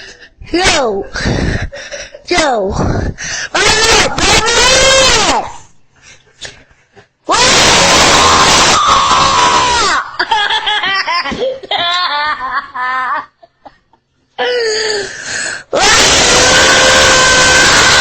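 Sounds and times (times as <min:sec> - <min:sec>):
boy giggling: 0:00.8 - 0:02.4, 0:10.2 - 0:14.0
boy shrieking: 0:07.3 - 0:10.1, 0:15.8 - 0:18.0.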